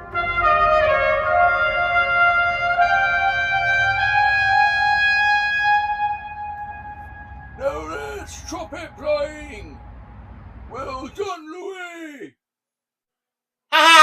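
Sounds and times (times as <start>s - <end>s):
solo trumpet long notes: 0.0s - 9.6s.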